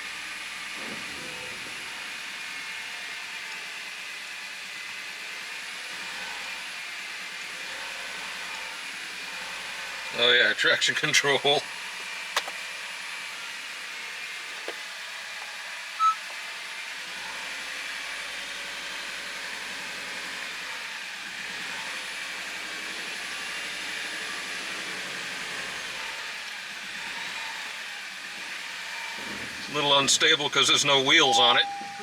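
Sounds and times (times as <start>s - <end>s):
car running noise: 9.3s - 13.5s, 14.4s - 16.4s
short electronic beep: 16.0s - 16.3s, 31.3s - 32.0s.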